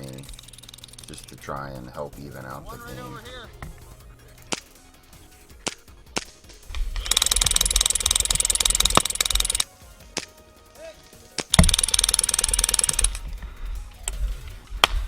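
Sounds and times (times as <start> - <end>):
single sharp shot snaps: 4.5 - 4.8, 10.1 - 10.4, 11.4 - 11.8
airsoft minigun rapid firing: 5.6 - 9.6, 11.4 - 13.3.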